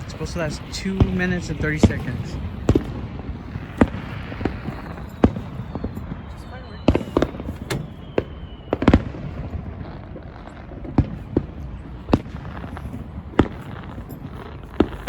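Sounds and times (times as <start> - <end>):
distant fireworks bangs: 0.0 - 15.0
high whistle sliding down: 4.9 - 9.0.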